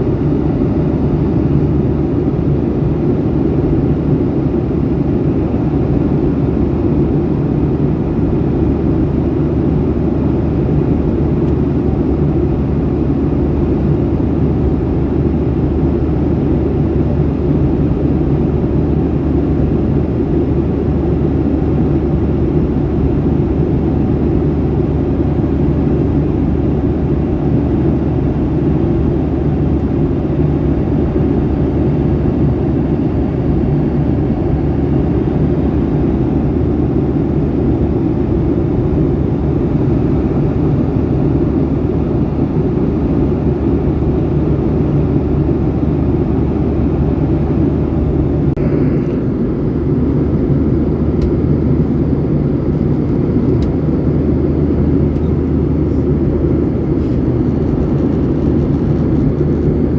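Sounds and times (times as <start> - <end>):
airliner cabin engine drone: 0.0 - 59.9.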